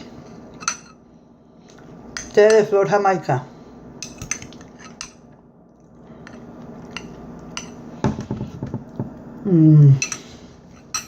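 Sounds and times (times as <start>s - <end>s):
person humming: 9.4s - 10.1s.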